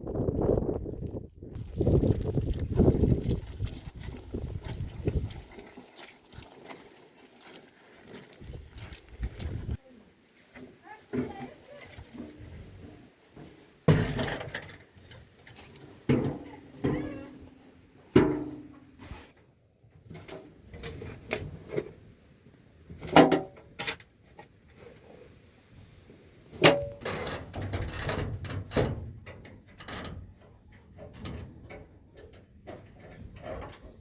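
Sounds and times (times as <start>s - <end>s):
objects knocking and clattering: 13.9s - 15.0s.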